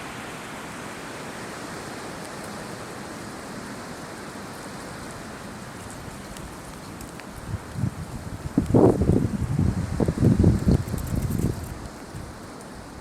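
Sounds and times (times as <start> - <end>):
strong wind rushing: 7.4 - 11.7.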